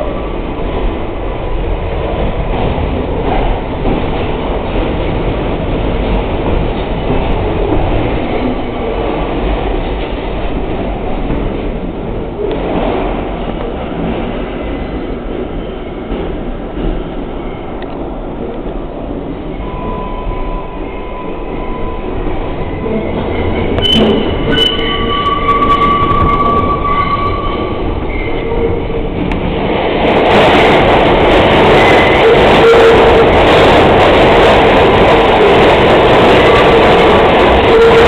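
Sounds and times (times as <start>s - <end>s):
subway train rail rumble: 0.0s - 38.0s
train wheels squealing: 19.6s - 28.7s.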